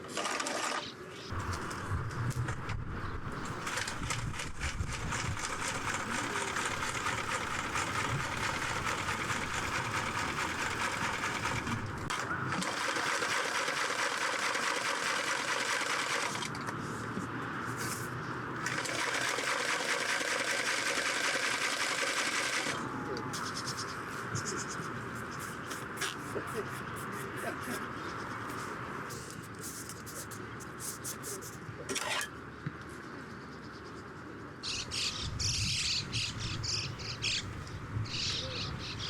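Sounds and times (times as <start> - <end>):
electric sewing machine stitching: 0.0 - 1.6, 3.3 - 16.6, 18.6 - 22.9.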